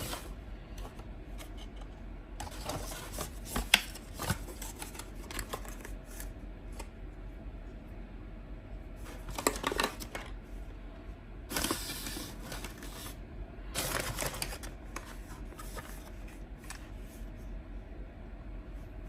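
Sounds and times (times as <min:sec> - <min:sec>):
paper and cardboard rustling: 0:00.0 - 0:01.8, 0:02.4 - 0:06.4, 0:09.0 - 0:10.3, 0:11.5 - 0:13.2, 0:13.8 - 0:17.3.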